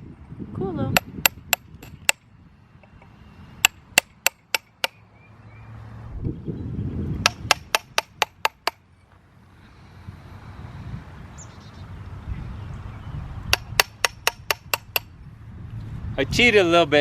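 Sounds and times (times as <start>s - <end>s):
hammer tapping steel chisel on stone: 7.2s - 8.8s, 13.5s - 15.1s.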